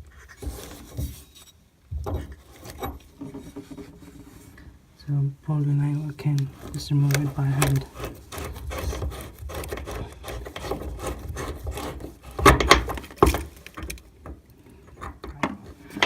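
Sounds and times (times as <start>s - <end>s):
quiet handling: 0.0s - 16.0s
metal pipe fitting scraping: 6.6s - 12.4s.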